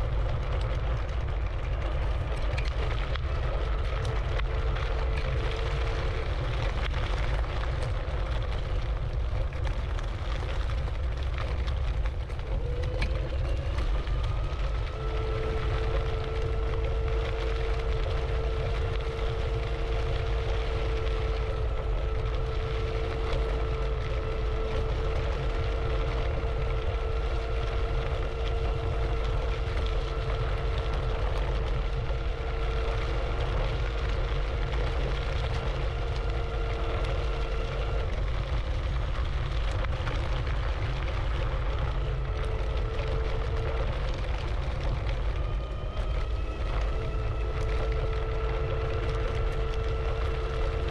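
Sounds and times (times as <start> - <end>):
heavy low rumble: 0.0 - 50.9
electric scooter motor whining: 12.4 - 38.2, 41.9 - 44.3, 44.9 - 50.9.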